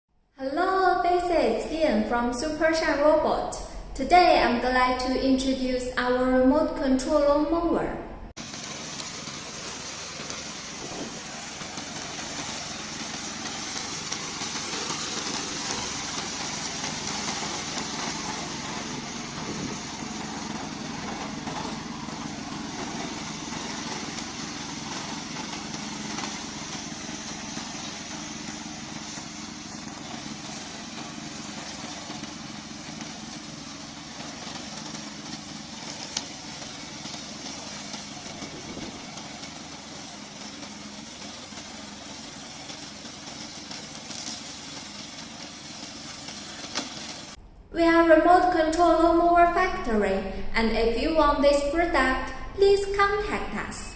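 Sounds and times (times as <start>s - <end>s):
lawn mower engine running: 8.4s - 47.4s.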